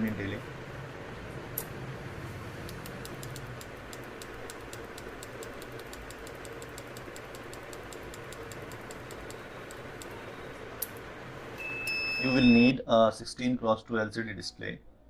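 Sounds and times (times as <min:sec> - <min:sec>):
rapid light ticking: 0:02.6 - 0:11.0.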